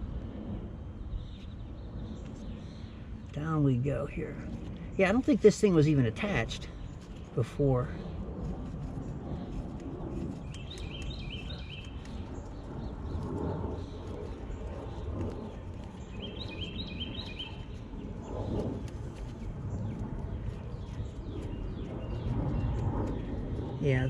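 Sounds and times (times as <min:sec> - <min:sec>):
low background rumble: 0:00.0 - 0:24.0
songbird chirping: 0:10.4 - 0:12.9, 0:14.9 - 0:17.8.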